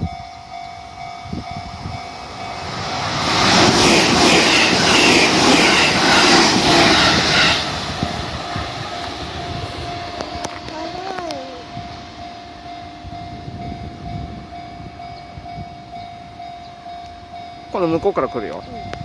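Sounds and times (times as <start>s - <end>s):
level crossing warning bell: 0.0s - 3.2s, 8.0s - 19.0s
train wheels clattering: 2.6s - 7.9s.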